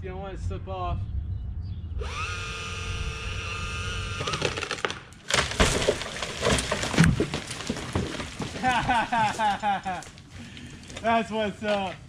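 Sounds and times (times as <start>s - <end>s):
chainsaw cutting: 2.0s - 7.1s
wood cracking and crashing down: 4.1s - 11.1s.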